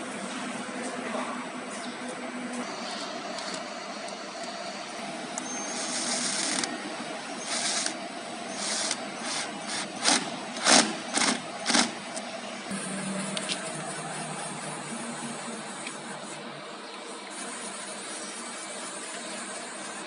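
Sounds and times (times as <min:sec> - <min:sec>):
cnc router machine hum: 0:00.0 - 0:20.0
pneumatic air hiss bursts: 0:05.4 - 0:12.0.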